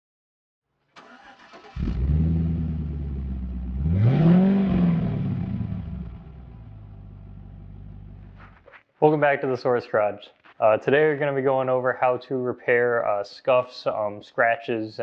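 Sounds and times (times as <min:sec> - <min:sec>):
car engine starting and revving: 0:01.0 - 0:08.5.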